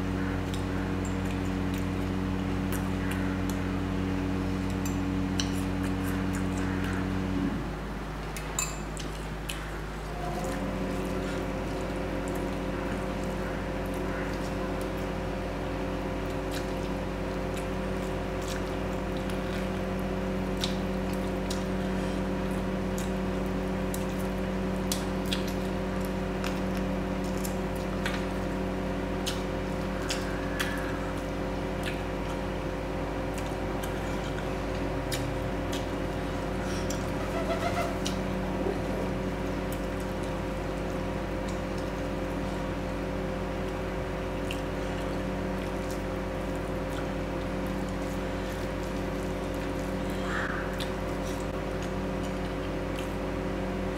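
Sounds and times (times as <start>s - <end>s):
steady tonal hum: 0.0s - 53.9s
wet chewing: 16.2s - 21.8s, 22.4s - 37.1s, 44.3s - 50.1s, 50.7s - 53.3s.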